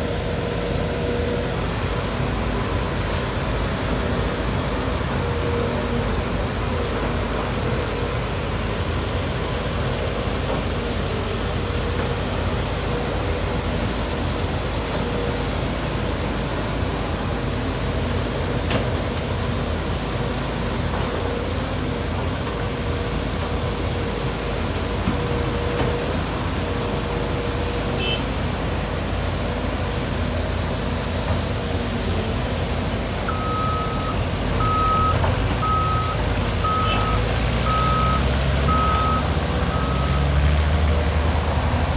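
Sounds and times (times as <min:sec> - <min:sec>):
heavy diesel machinery running: 0:00.0 - 0:41.9
reversing alarm beeping: 0:33.1 - 0:41.9.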